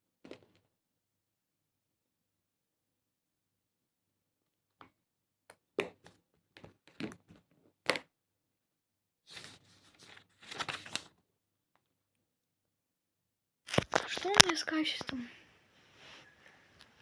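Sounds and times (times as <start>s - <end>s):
crinkling and rustling: 9.3s - 11.2s, 13.7s - 17.0s.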